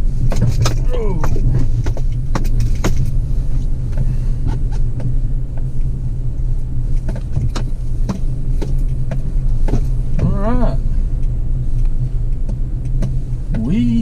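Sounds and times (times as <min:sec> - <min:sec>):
truck engine low rumble: 0:00.0 - 0:14.0
knocks and rattles: 0:00.2 - 0:03.2.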